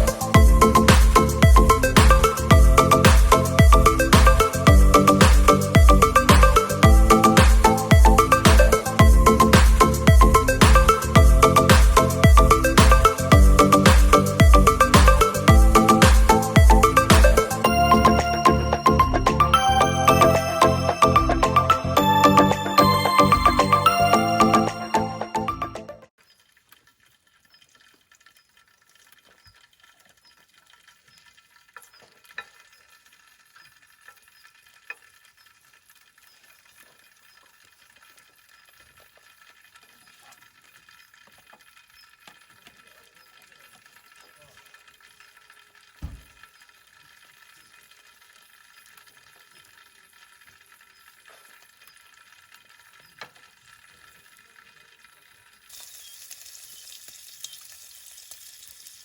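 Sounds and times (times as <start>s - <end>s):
food sizzling in a pan: 26.2s - 59.0s
dull thump: 46.0s - 46.3s.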